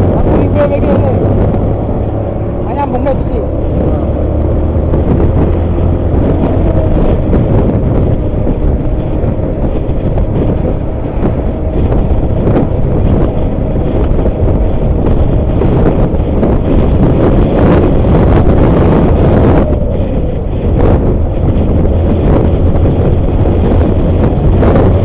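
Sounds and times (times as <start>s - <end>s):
bus diesel engine drone: 0.0s - 25.0s.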